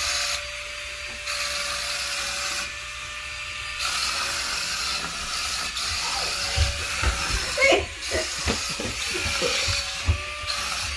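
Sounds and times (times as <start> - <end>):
toy motors whirring: 0.0 - 10.9.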